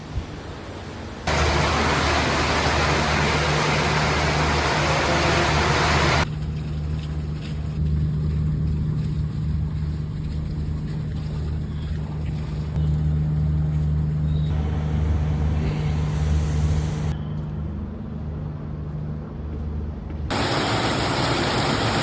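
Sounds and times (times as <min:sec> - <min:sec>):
heavy rain hissing: 0:00.0 - 0:06.3, 0:14.6 - 0:17.1, 0:20.3 - 0:22.0
steady low hum: 0:01.3 - 0:22.0.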